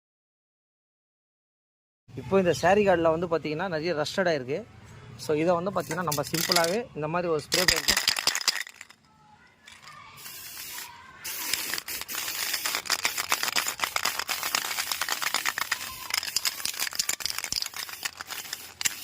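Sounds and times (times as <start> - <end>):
spray paint can hissing: 5.8 - 6.8, 7.6 - 8.9, 9.7 - 19.0.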